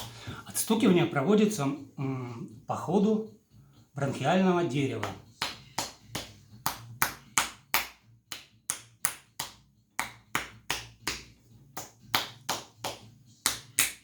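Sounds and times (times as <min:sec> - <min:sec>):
hands slapping rib cage: 0:05.0 - 0:14.0.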